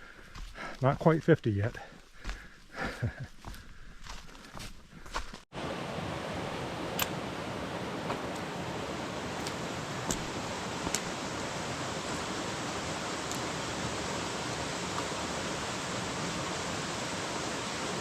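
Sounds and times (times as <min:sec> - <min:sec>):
mountain stream rushing: 0:05.6 - 0:18.0.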